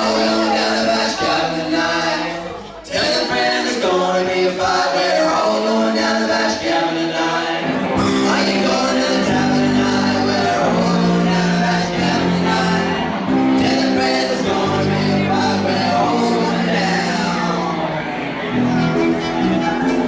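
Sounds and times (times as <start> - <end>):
person singing: 0.0 - 20.0
bass line: 7.6 - 20.0
live band playing: 7.6 - 20.0.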